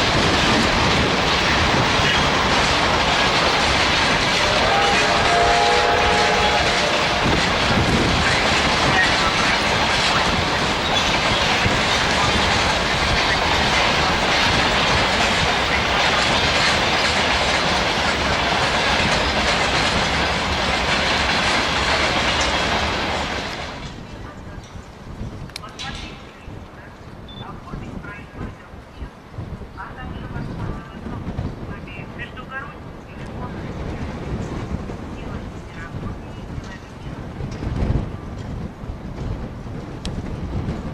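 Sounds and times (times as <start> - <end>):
train wheels clattering on rails: 0.0 - 26.4, 33.3 - 40.9
steam train whistle: 4.4 - 7.6.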